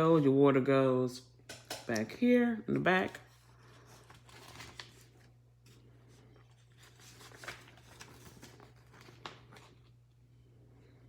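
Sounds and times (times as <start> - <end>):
paper pages rustling: 3.1 - 10.0.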